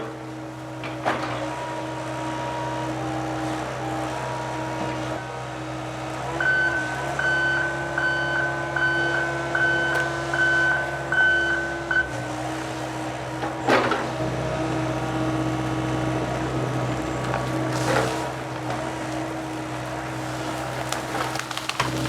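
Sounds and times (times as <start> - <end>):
diesel engine running: 0.0 - 22.0
travel alarm beeping: 6.4 - 12.1.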